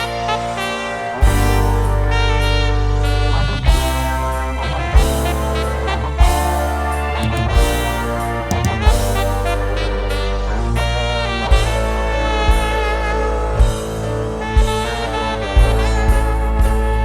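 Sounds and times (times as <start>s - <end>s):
heavy bass: 0.0s - 17.0s
reedy melody: 0.0s - 17.0s
strong drum hits: 1.2s - 2.6s, 3.5s - 10.2s.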